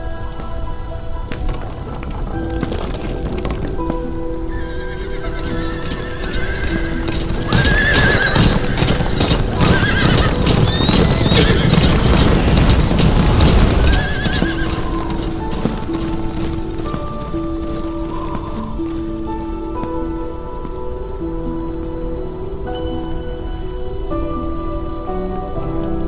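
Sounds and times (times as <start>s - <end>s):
background music: 0.0s - 26.0s
horses galloping: 0.0s - 26.0s
horse whinnies: 4.5s - 16.6s.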